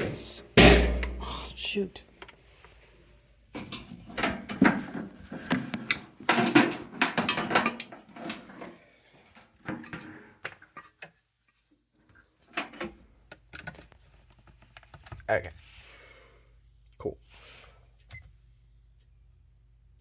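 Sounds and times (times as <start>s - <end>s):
plastic and metal clattering: 3.6s - 8.7s.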